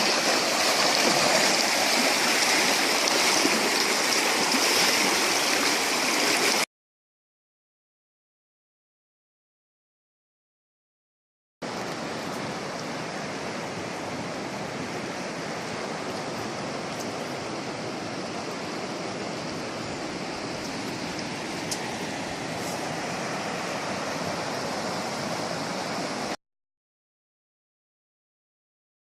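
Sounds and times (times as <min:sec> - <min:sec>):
river water flowing over stones: 0:00.0 - 0:06.7, 0:11.6 - 0:26.4.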